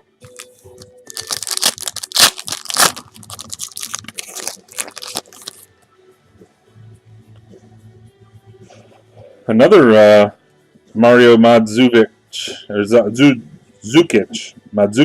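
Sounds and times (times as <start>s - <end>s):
wrapper tearing and crinkling: 0.2s - 5.6s.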